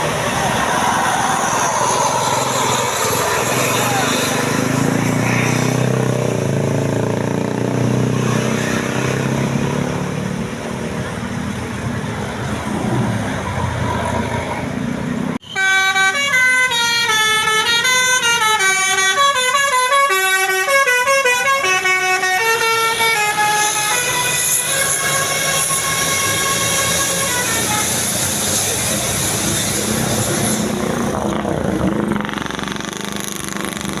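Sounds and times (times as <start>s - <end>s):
vehicle road noise: 0.0s - 34.0s
bus horn melody: 15.4s - 28.3s.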